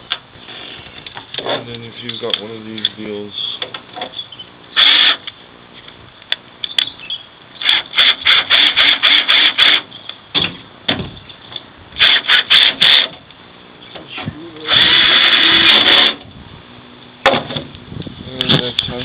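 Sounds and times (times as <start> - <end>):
hand tool rasping strokes: 7.6 - 9.9, 14.2 - 16.2.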